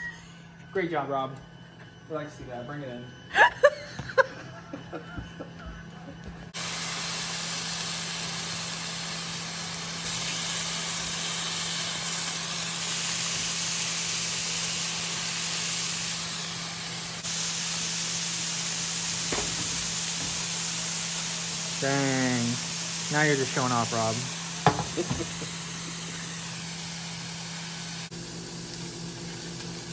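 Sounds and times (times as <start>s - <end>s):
meat sizzling in a frying pan: 6.6s - 29.9s.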